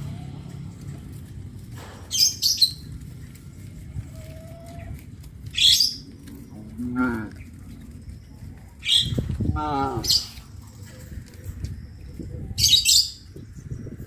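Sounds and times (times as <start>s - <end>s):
low steady rumble: 0.0s - 14.0s
shrill bird calls: 2.1s - 3.0s.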